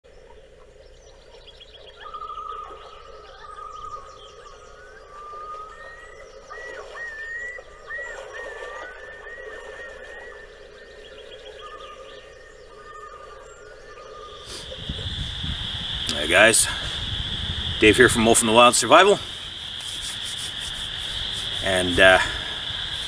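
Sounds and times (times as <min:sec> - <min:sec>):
birds singing: 0:00.1 - 0:23.0
steady background hum: 0:10.6 - 0:23.0.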